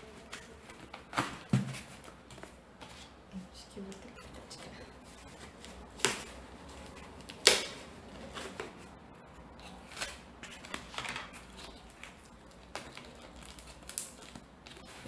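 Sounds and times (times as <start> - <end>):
packaging crinkling: 9.5 - 15.0.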